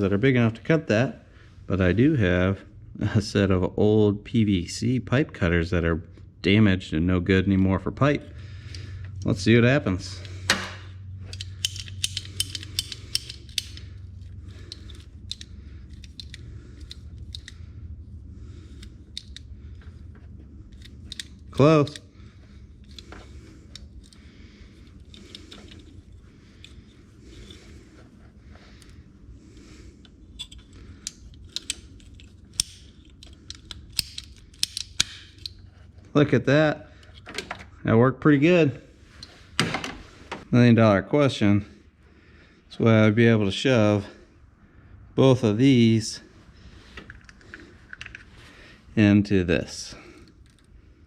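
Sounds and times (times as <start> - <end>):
pipe cutters clicking: 10.2 - 17.6, 18.6 - 19.8, 20.7 - 22.2, 22.8 - 27.7, 30.0 - 35.6
pipe cutters snapping through cable: 10.5 - 13.9, 30.4 - 35.6.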